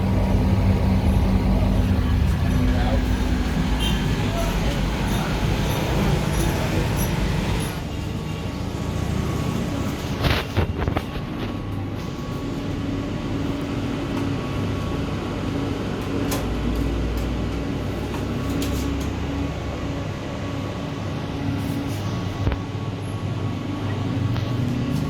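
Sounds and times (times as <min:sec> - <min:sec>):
air conditioner humming: 0:00.0 - 0:07.8.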